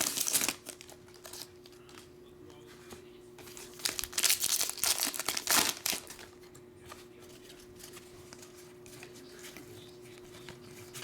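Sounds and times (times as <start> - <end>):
card pack wrapper crinkling: 0.0 - 1.5, 3.7 - 6.3
cards being handled: 2.8 - 11.0.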